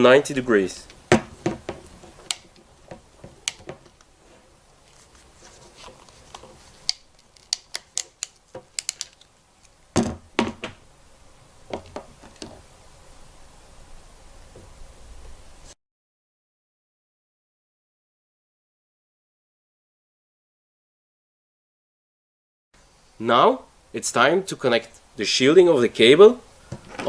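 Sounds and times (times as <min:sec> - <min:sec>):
tool and cable knocking: 0:01.1 - 0:03.9
crimping tool clicking: 0:01.8 - 0:04.1, 0:05.8 - 0:09.8.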